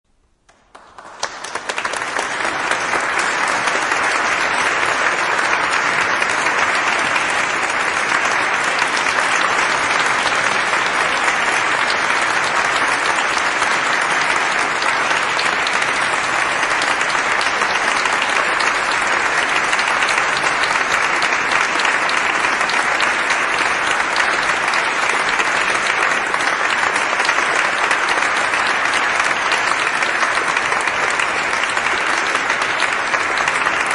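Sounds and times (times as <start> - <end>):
audience applauding in hall: 0.3 - 33.9.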